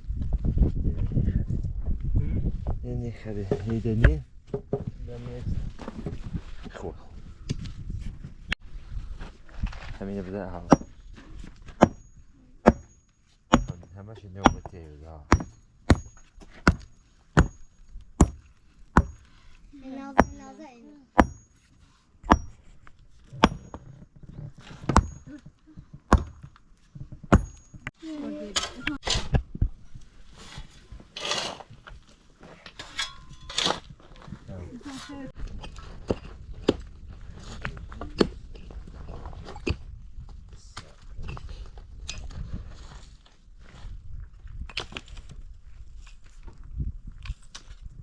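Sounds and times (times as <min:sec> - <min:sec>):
sharp knocks: 0:11.7 - 0:19.2, 0:21.2 - 0:21.5, 0:23.4 - 0:23.9
metal tool striking with ring: 0:11.8 - 0:19.3, 0:21.2 - 0:21.7, 0:22.3 - 0:22.7, 0:23.4 - 0:23.9, 0:27.3 - 0:28.0, 0:32.9 - 0:33.7
crunching and scraping handling: 0:21.5 - 0:27.9.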